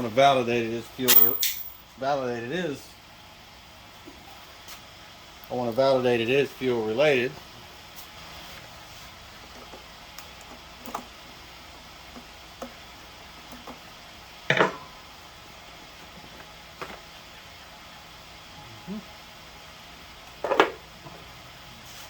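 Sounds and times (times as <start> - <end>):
light clicks and knocks of tools: 1.1 - 1.8.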